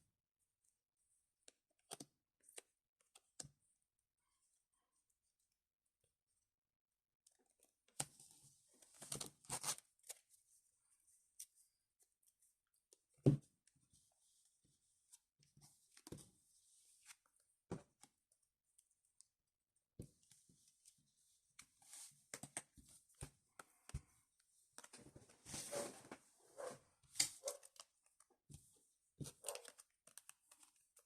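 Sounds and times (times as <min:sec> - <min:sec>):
packaging and cards rustling: 0:29.2 - 0:31.0.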